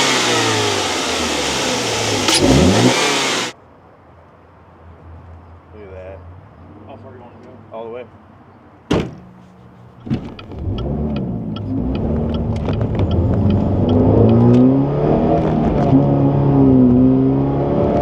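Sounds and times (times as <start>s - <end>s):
car engine revving: 0.0s - 3.6s, 10.5s - 18.0s
sharp knock: 8.9s - 9.3s.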